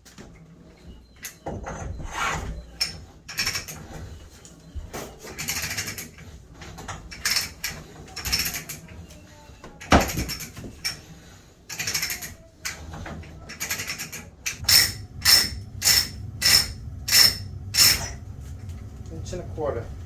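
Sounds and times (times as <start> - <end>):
pipe-threading die scraping: 11.7 - 18.2.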